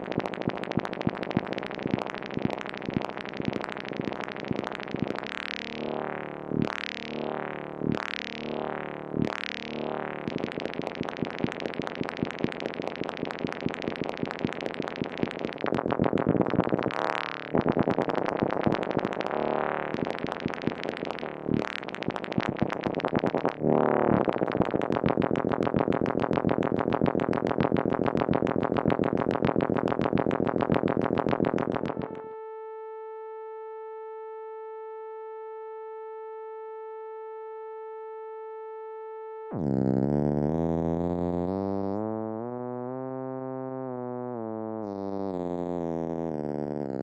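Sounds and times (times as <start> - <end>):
synthesizer stuttering pulses: 0.0 - 32.2, 44.9 - 47.0
synthesizer held tone: 0.0 - 32.3.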